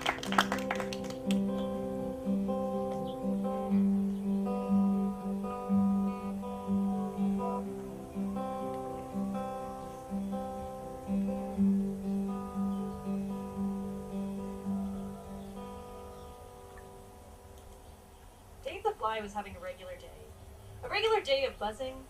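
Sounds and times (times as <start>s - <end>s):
plucked acoustic guitar: 0.0s - 17.3s.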